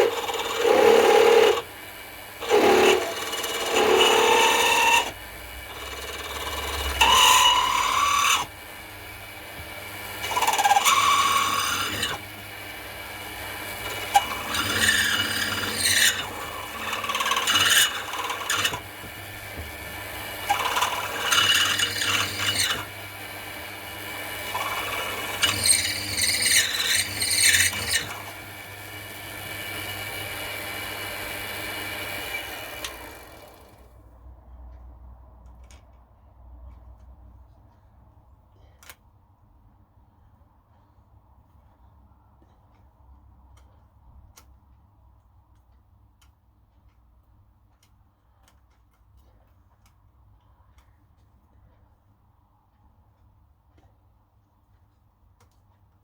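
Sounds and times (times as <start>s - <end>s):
cutter rasping on metal: 0.0s - 33.7s
milling machine motor whine: 0.0s - 33.8s.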